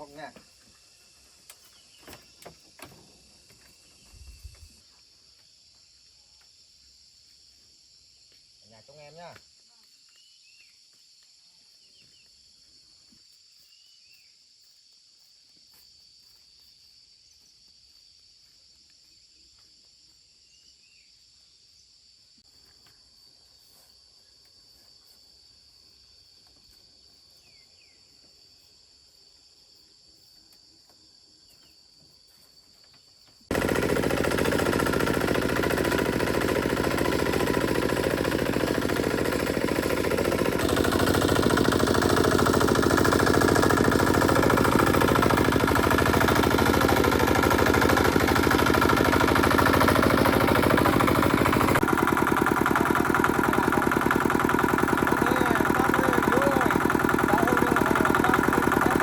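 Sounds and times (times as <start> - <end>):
insects buzzing: 0.0 - 59.0
faint bird chirps: 11.4 - 15.3
small engine chugging: 33.5 - 59.0.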